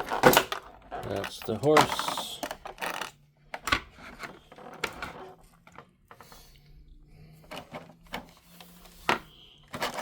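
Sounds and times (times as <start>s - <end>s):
packaging rustling and scraping: 7.4s - 10.0s.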